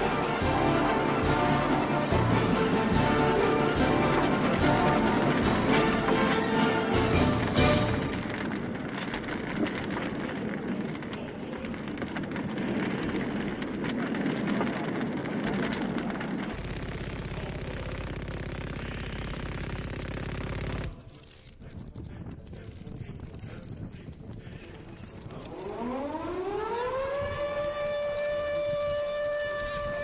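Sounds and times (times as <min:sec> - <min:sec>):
automatic gunfire rattle: 0:15.1 - 0:29.8.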